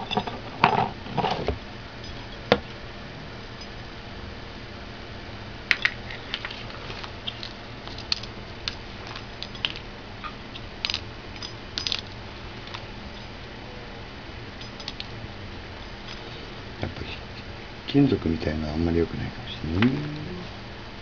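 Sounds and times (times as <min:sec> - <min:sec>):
small metal object clinking: 0:07.3 - 0:09.8, 0:10.6 - 0:13.4, 0:14.6 - 0:15.1.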